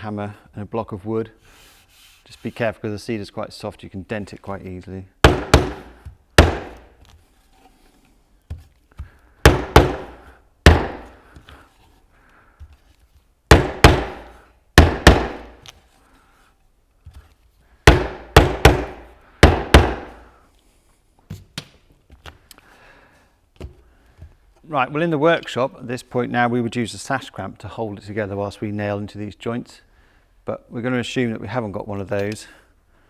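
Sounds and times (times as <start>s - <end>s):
rubber mallet striking wooden frame: 5.2s - 7.1s, 9.4s - 11.2s, 13.5s - 15.7s, 17.8s - 20.2s.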